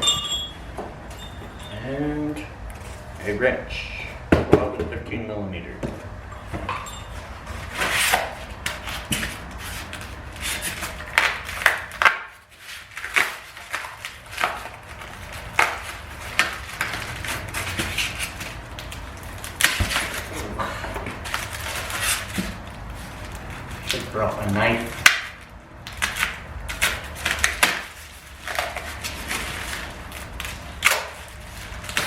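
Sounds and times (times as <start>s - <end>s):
parts knocking and clattering: 0.0s - 1.8s, 5.8s - 12.4s
packaging rustling: 7.4s - 32.0s.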